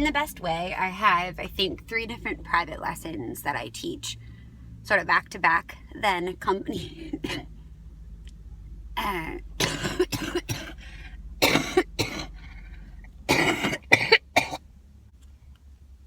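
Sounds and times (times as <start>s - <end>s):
woman coughing: 6.7s - 7.5s, 9.0s - 10.8s, 11.4s - 12.4s, 13.3s - 14.6s.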